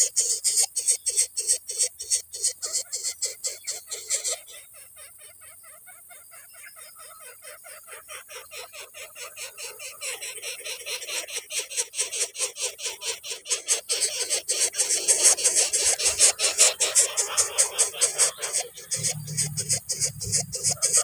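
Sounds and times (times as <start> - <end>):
nestlings begging calls: 0.0 - 21.0.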